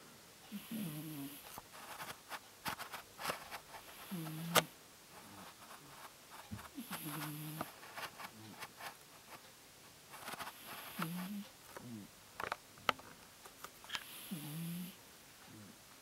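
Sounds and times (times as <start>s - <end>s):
cat snoring: 0.5s - 1.4s, 3.8s - 4.7s, 6.8s - 7.7s, 10.5s - 12.1s, 14.0s - 15.7s.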